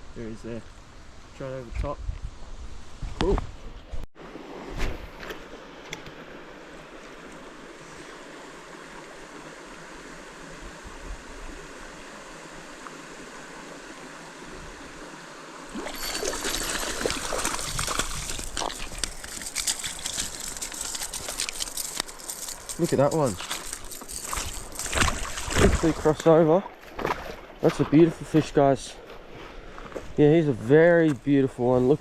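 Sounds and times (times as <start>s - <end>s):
stream water flowing: 4.2s - 29.4s
splashing in water: 15.7s - 27.9s.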